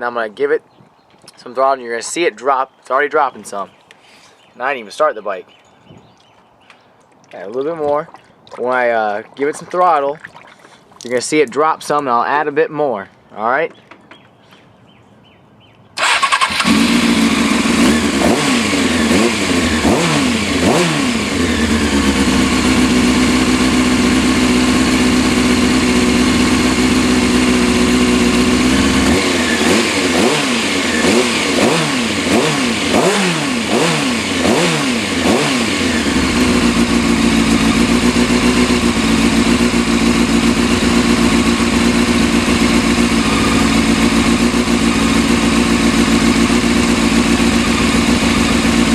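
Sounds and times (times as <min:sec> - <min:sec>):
motorcycle engine idling and revving: 0:16.0 - 0:48.9
motorcycle engine starting: 0:16.0 - 0:48.9.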